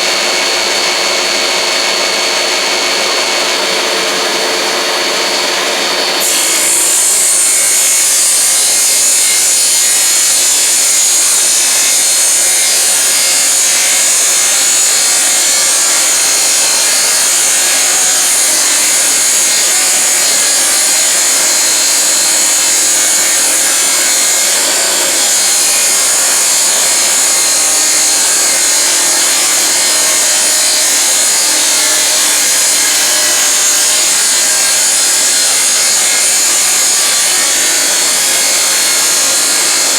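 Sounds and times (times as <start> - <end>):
saw motor running: 0.0 - 39.9
table saw cutting wood: 0.0 - 39.9.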